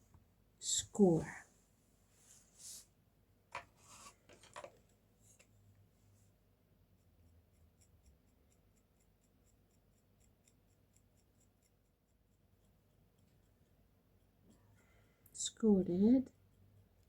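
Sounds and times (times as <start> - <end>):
tool scratching soft clay: 3.7 - 4.3, 7.0 - 14.7, 16.3 - 17.0.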